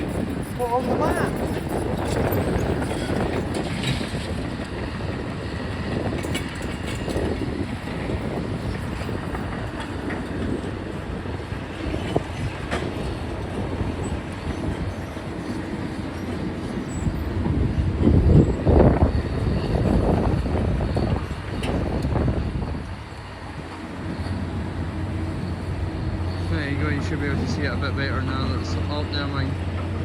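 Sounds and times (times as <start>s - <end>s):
steel tracks clanking and squealing: 0.0s - 30.0s
diesel engine droning: 17.6s - 30.0s.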